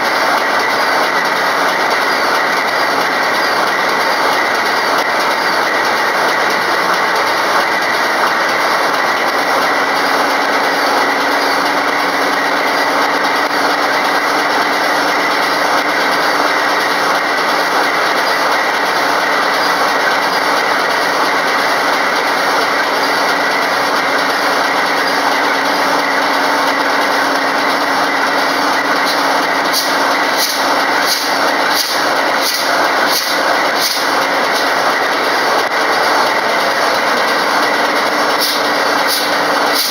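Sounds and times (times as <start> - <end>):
loud steady hiss: 28.5 - 35.0, 38.2 - 39.9.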